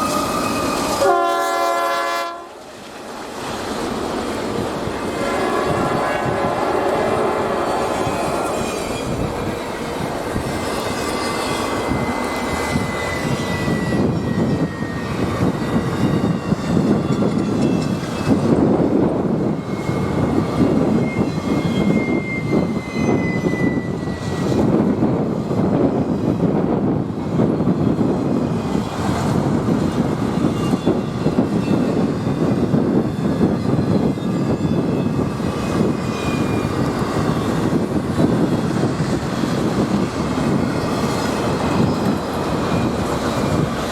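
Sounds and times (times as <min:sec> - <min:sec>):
wheel squeals: 0:00.0 - 0:01.0, 0:05.7 - 0:18.6, 0:19.6 - 0:24.7, 0:30.4 - 0:43.9
freight train rumbling past: 0:00.0 - 0:43.9.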